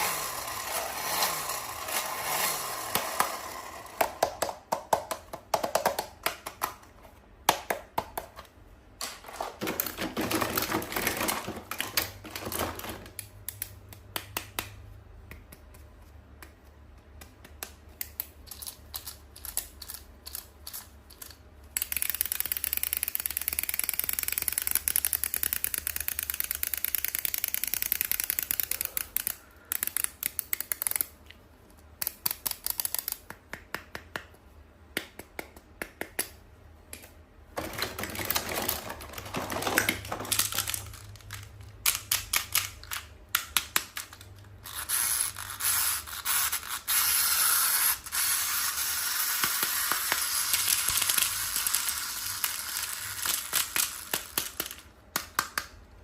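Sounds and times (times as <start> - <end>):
taps and clicks of toys: 2.5 - 8.5, 9.1 - 31.2, 32.0 - 45.0, 49.1 - 55.8
packaging crinkling: 37.6 - 41.6.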